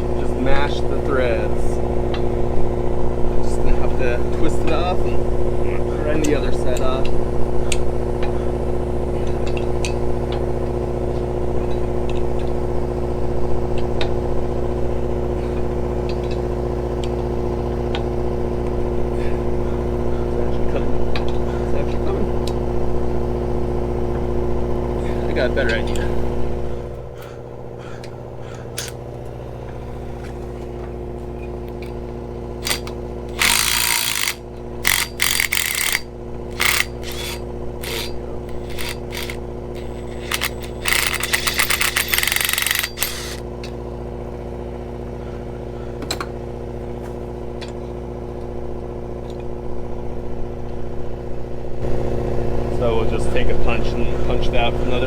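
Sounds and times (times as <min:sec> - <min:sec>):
machinery hum: 0:00.0 - 0:55.0
rapid metallic clicking: 0:32.6 - 0:43.8.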